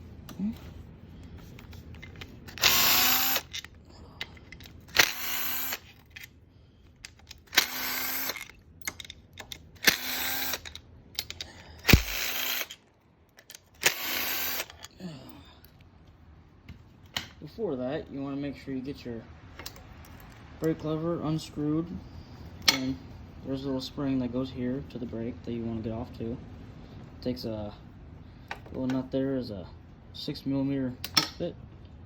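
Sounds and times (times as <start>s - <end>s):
power drill running: 2.5s - 3.6s, 4.9s - 5.9s, 7.5s - 8.5s, 9.8s - 10.8s, 11.8s - 12.8s, 13.8s - 14.8s.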